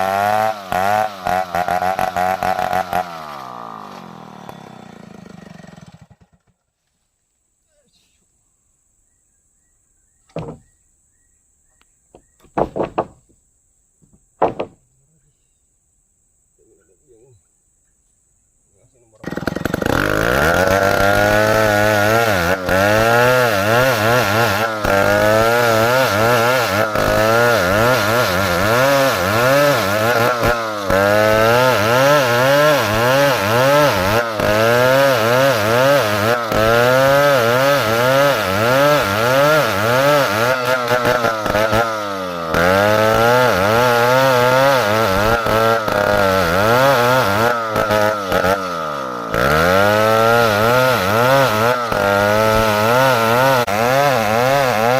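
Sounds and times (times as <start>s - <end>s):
chainsaw cutting wood: 0.0s - 6.6s, 10.3s - 10.6s, 12.2s - 13.4s, 14.1s - 14.8s, 19.2s - 54.9s.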